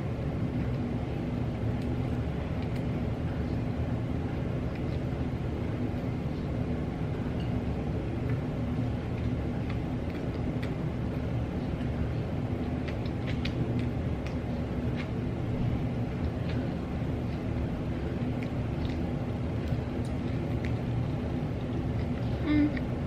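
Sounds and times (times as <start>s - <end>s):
room hum: 0.0s - 23.0s
eating clicks and smacks: 1.7s - 3.0s, 8.2s - 23.0s.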